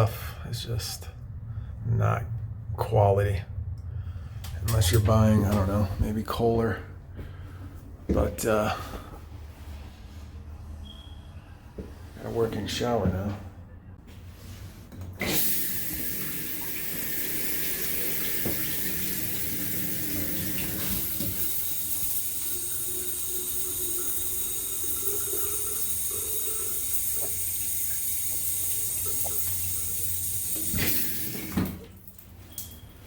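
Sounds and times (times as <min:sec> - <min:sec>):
water spraying from shower head: 0:15.2 - 0:31.5.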